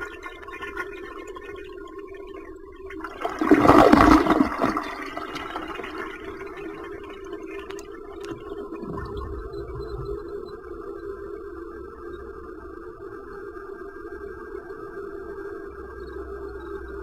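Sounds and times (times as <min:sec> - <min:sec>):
toilet flushing: 0:02.9 - 0:10.0.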